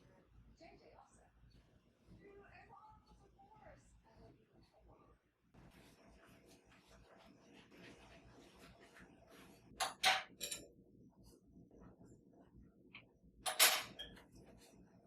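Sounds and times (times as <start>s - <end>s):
kitchen items clattering: 9.6s - 10.7s, 13.4s - 14.7s.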